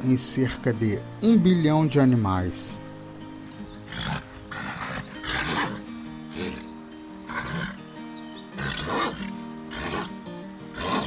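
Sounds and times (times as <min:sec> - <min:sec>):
background music sustained notes: 0:00.0 - 0:11.0
harsh animal calls: 0:03.8 - 0:11.0.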